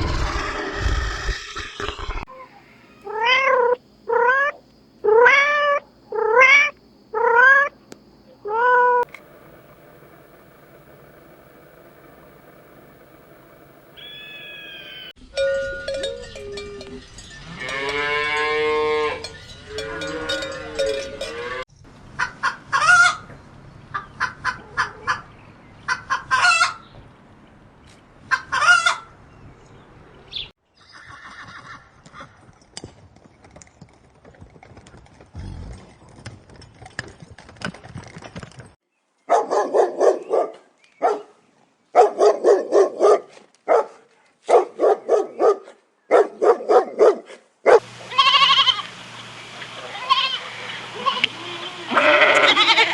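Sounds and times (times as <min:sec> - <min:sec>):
long drawn-out animal call: 0:00.0 - 0:07.8, 0:08.4 - 0:15.1, 0:49.8 - 0:52.9
dog barking: 0:39.3 - 0:47.8.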